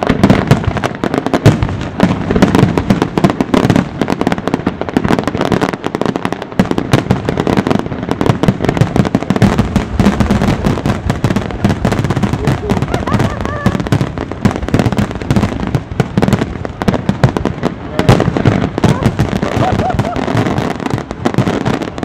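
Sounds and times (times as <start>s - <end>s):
fireworks bangs and crackles: 0.0s - 22.0s.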